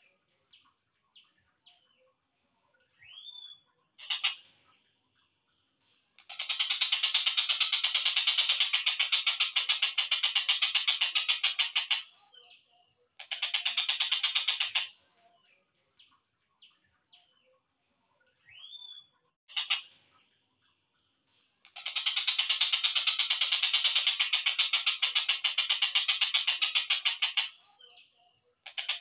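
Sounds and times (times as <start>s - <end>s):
faint bird chirps: 0.0s - 29.0s
kingfisher rattling call: 4.0s - 4.4s, 6.2s - 12.1s, 13.2s - 14.9s, 19.5s - 19.9s, 21.7s - 27.6s, 28.7s - 29.0s.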